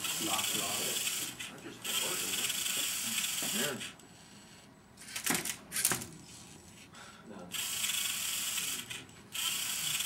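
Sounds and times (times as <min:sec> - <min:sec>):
robot motors whirring: 0:07.6 - 0:10.0.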